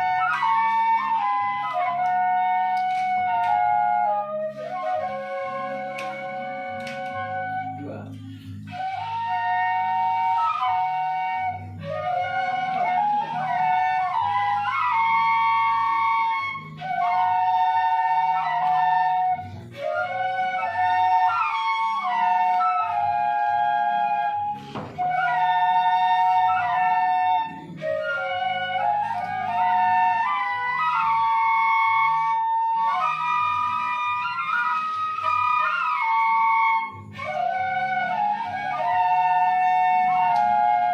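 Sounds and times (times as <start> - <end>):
bamboo flutes playing in harmony: 0.0 - 40.9
flute player breaths: 8.1 - 8.7.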